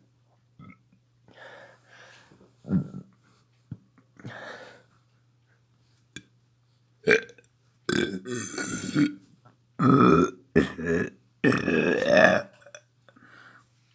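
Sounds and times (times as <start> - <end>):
person burping: 7.1 - 7.3, 7.9 - 9.2, 9.8 - 12.8.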